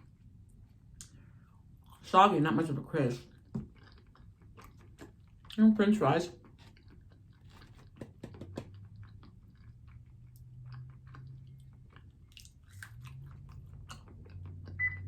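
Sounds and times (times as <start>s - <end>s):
person chewing crunchy food: 3.2s - 5.6s, 6.3s - 14.9s.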